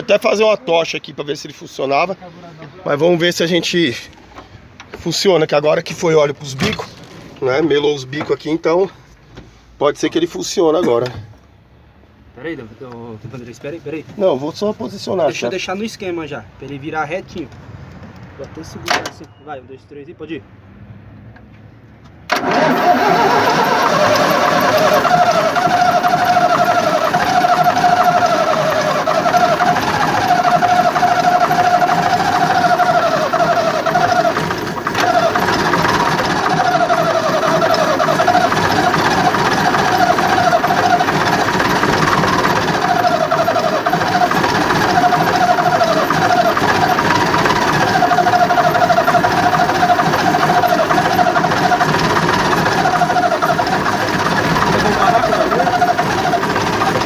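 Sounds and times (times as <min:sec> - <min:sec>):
diesel engine cranking by starter: 0:22.2 - 0:57.0.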